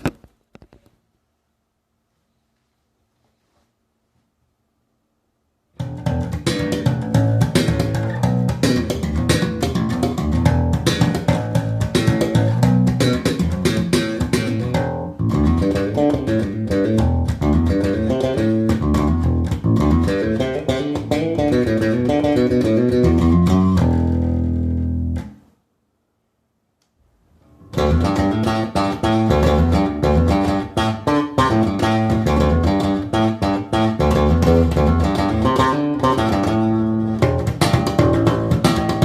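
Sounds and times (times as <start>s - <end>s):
electric bass plucked notes: 5.8s - 25.4s, 27.6s - 39.0s.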